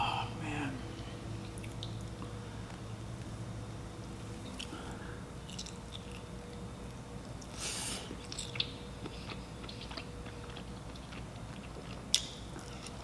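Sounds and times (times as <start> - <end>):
person chewing seafood: 7.4 - 13.0.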